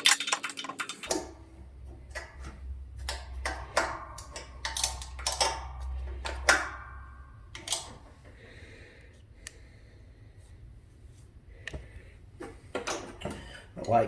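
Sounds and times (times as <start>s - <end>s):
metal tools clinking and knocking: 0.0s - 8.2s.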